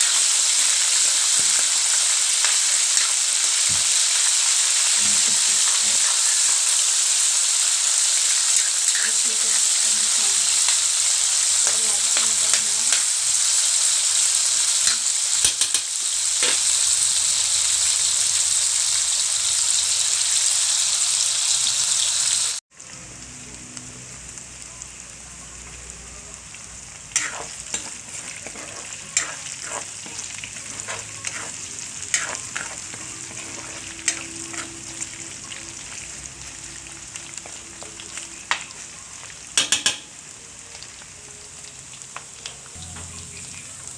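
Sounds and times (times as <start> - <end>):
food sizzling in a pan: 0.0 - 43.9
utensil tapping against pan: 39.6 - 40.1.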